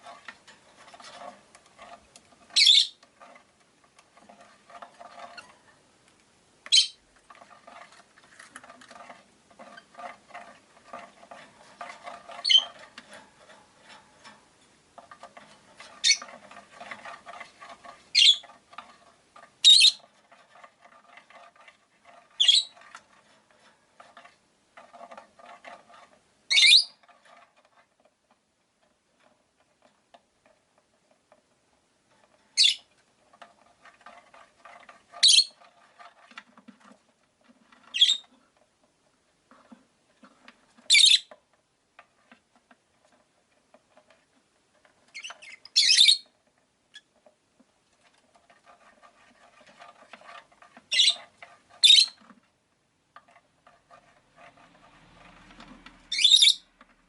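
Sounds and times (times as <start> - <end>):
clicking and rustling patter: 0.0 - 57.0
lovebirds chirping: 2.6 - 3.0, 6.7 - 7.0, 18.1 - 18.4, 19.6 - 20.0, 26.5 - 27.0, 32.6 - 32.8, 50.9 - 51.2, 51.8 - 52.2, 56.1 - 56.7.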